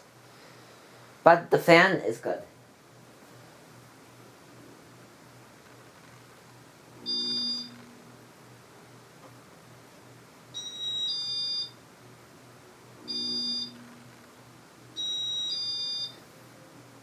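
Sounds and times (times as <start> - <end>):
ceiling fan control beeping: 7.0 - 8.0, 10.5 - 11.8, 13.0 - 14.2, 14.9 - 16.8.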